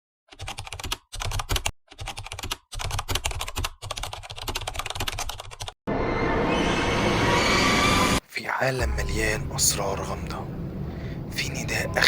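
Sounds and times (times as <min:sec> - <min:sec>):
rapid keyboard typing: 0:00.3 - 0:05.8.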